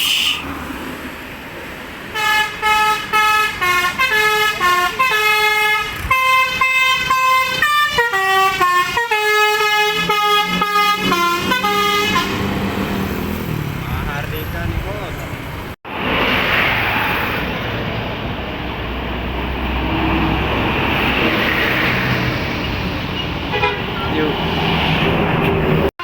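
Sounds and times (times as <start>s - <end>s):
multi-tone bus air horn tune: 2.1s - 12.5s, 23.5s - 24.0s.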